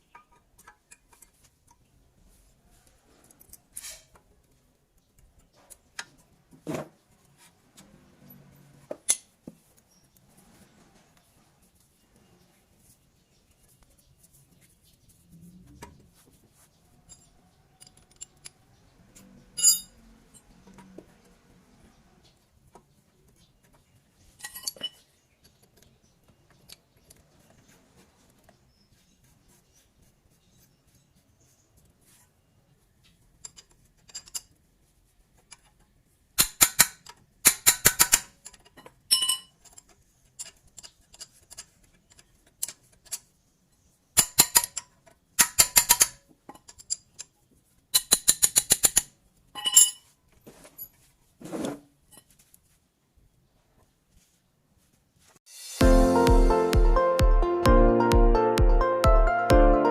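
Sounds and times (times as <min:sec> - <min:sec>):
metallic clicks of hand tools: 0:36.4 - 0:43.2, 0:44.2 - 0:47.3, 0:47.9 - 0:49.1.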